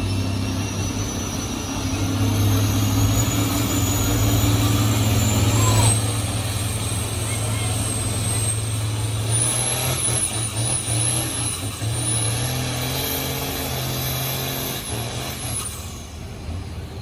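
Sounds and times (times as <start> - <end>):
high wavering whine: 0.0 - 12.4
tractor diesel engine under load: 0.0 - 17.0.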